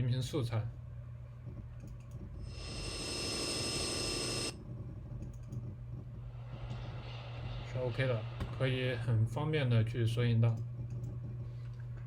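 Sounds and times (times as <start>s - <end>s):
high jet-like whine over hiss: 2.5s - 4.6s, 6.3s - 9.3s.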